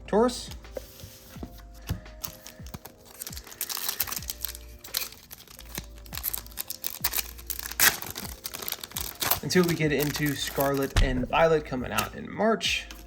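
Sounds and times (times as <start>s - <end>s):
foil wrapper crinkling: 2.2s - 10.9s.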